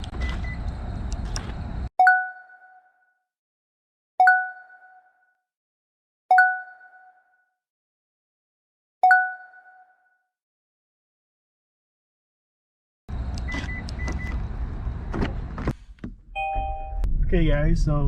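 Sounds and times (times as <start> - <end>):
steady rumble: 0.0 - 1.9, 13.1 - 18.0
two-note electronic ding: 16.4 - 17.1.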